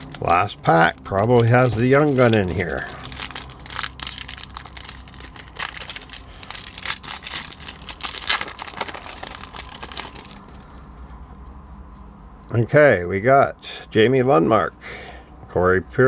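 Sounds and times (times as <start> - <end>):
wrapper crinkling and tearing: 0.0 - 10.6.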